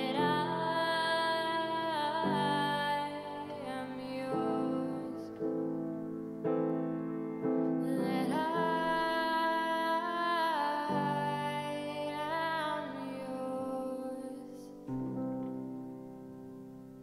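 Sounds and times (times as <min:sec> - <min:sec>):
woman singing: 0:00.0 - 0:05.8, 0:07.7 - 0:14.9
piano chords: 0:00.0 - 0:17.0.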